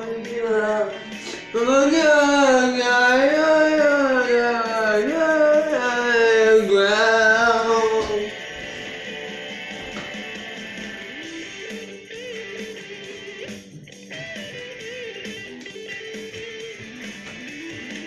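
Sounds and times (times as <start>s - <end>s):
person singing wordless notes: 0.0s - 8.8s
pop-rock guitar backing: 0.0s - 18.0s.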